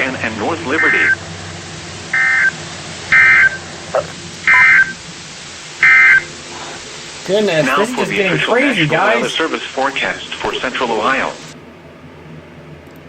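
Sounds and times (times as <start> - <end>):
two-tone digital data squawks: 0.7 - 1.2, 2.2 - 5.0, 5.8 - 6.3.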